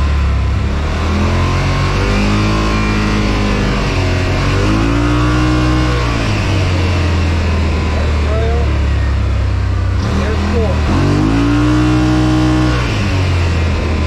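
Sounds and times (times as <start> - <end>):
engine revving under way: 0.0 - 14.0
low rumble: 0.0 - 14.0.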